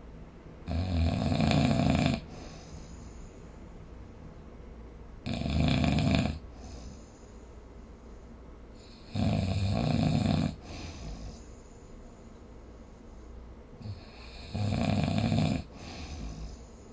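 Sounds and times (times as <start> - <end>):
person snoring: 0.7 - 2.9, 5.2 - 7.0, 8.8 - 11.5, 13.8 - 16.7
quiet breathing: 1.2 - 4.3, 5.7 - 16.9.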